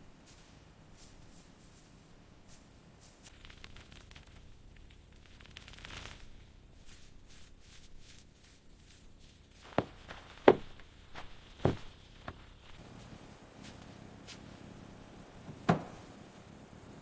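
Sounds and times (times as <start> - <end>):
irregular knocks: 9.7 - 12.5.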